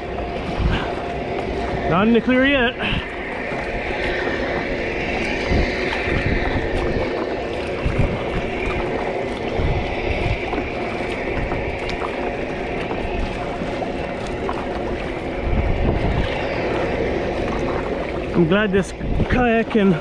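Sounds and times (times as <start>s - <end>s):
water sloshing around kayak: 0.0s - 20.0s
wind on microphone: 0.0s - 20.0s.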